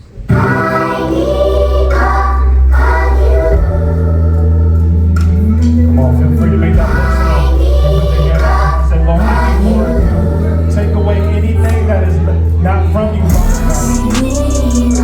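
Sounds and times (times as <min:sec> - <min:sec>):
voices singing sustained chords: 0:00.1 - 0:15.0
deep steady bass: 0:02.4 - 0:15.0.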